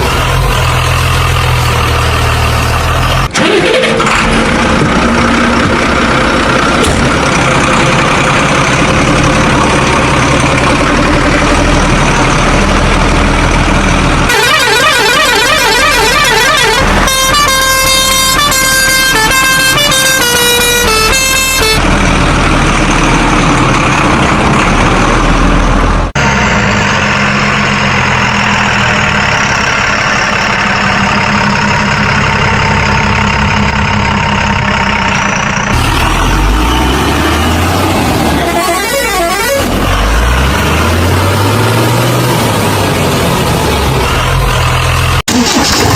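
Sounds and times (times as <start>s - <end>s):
truck engine rumbling: 0.0s - 45.9s
long steady truck horn: 14.3s - 21.8s, 38.2s - 40.3s
stepped horn tones: 14.3s - 21.8s, 38.2s - 40.4s
wobbling siren: 14.3s - 21.8s.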